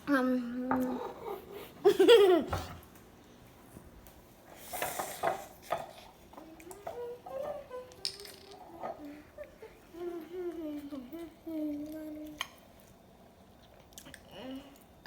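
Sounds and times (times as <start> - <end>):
child humming: 6.4 - 12.4.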